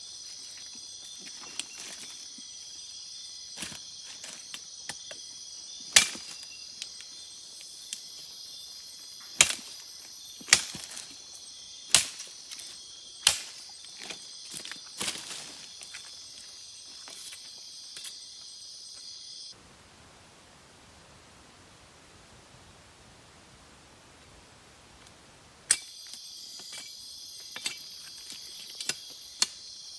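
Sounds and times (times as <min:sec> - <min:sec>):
insects chirring: 0:00.0 - 0:19.6, 0:25.0 - 0:29.9
machete chopping branch: 0:05.9 - 0:06.5, 0:09.3 - 0:11.2, 0:11.9 - 0:15.4.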